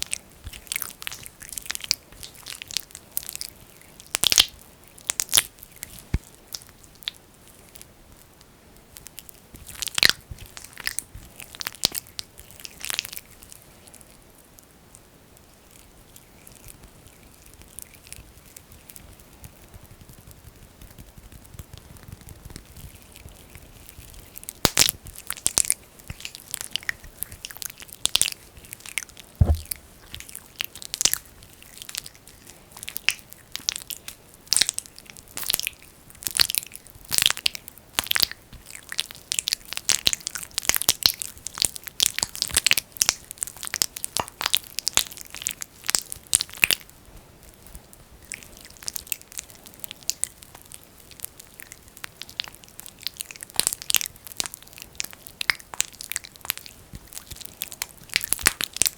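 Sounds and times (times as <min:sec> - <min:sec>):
sticky crackles on microphone: 0:18.6 - 0:24.4, 0:29.4 - 0:30.3
low thump: 0:29.4 - 0:29.8.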